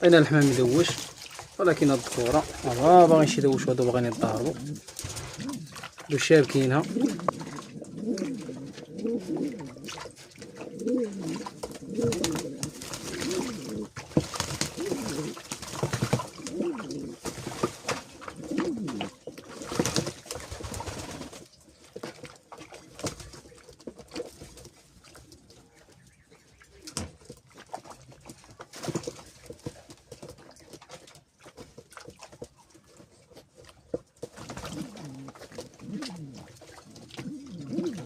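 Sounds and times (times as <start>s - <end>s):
pigeons cooing: 1.6s - 17.3s, 18.0s - 21.4s, 34.4s - 38.0s.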